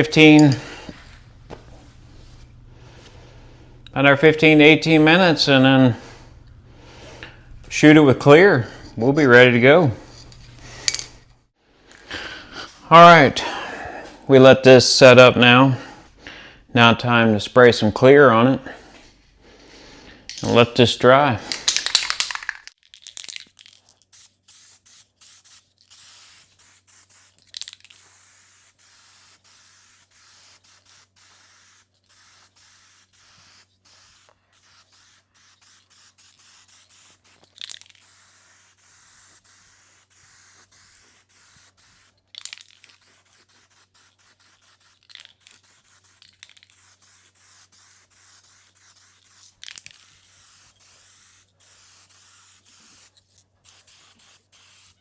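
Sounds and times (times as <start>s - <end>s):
hissing paint spray: 24.1s - 55.0s.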